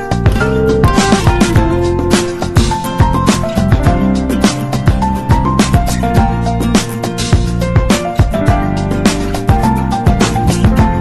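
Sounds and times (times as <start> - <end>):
plucked guitar: 0.0 - 11.0
drum beat: 0.2 - 6.4.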